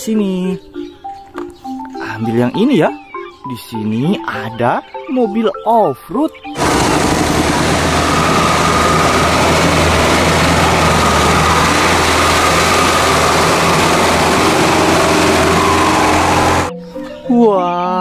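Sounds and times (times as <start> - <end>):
vehicle engine running: 6.6 - 16.7.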